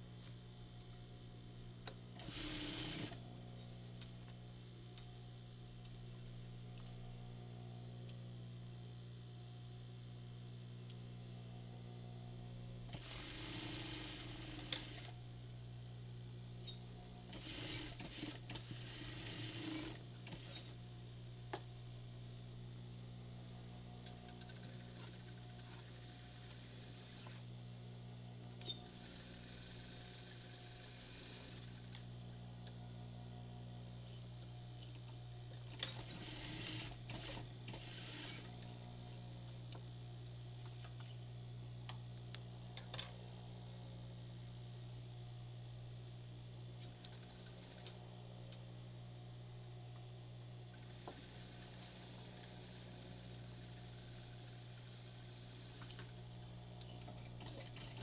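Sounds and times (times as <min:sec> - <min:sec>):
motor hum: 0:00.0 - 0:58.0
sewing machine motor hum: 0:01.8 - 0:03.3, 0:12.3 - 0:15.2, 0:17.0 - 0:20.8, 0:24.0 - 0:27.5, 0:28.5 - 0:32.1, 0:34.9 - 0:39.1, 0:46.9 - 0:48.1, 0:50.7 - 0:58.0
sewing machine stitching: 0:02.2 - 0:03.2, 0:12.9 - 0:15.1, 0:17.3 - 0:20.7, 0:35.7 - 0:38.6.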